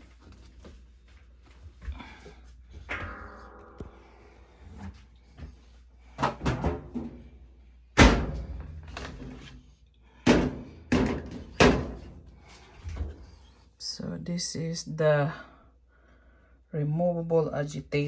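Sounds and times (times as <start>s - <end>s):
hard thumps and knocks: 10.3s - 12.2s.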